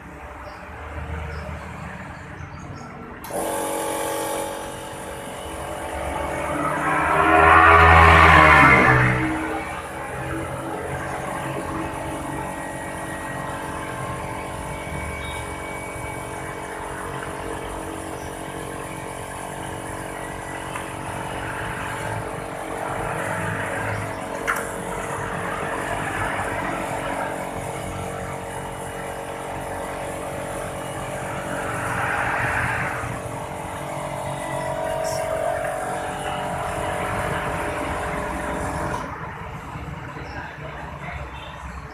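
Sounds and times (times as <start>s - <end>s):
compressor mechanical growl: 3.2s - 39.8s
car engine running: 3.2s - 40.4s
loud rush: 4.5s - 17.0s.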